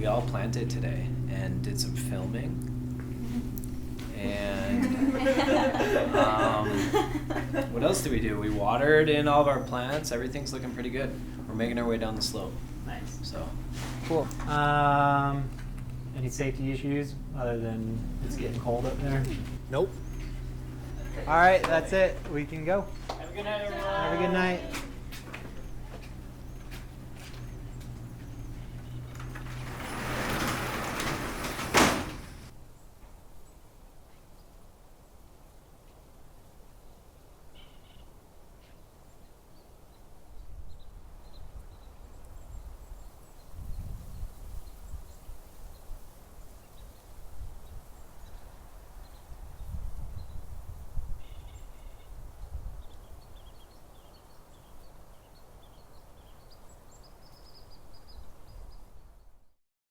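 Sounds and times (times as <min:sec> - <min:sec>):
small birds chirping: 0:00.0 - 0:29.9, 0:51.2 - 0:59.2
steady low hum: 0:00.0 - 0:32.8
door sliding and banging shut: 0:00.1 - 0:32.5
wind buffeting microphone: 0:43.5 - 0:45.2.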